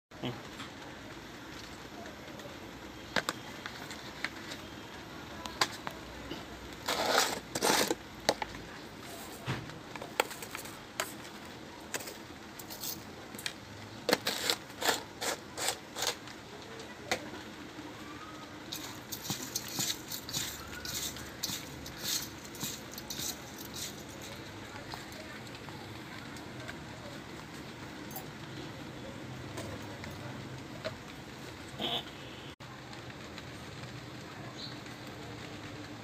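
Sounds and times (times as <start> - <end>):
rustling scraping noises: 5.6 - 13.1, 14.0 - 16.3, 18.7 - 26.7
kitchen utensils clicking: 18.7 - 25.1.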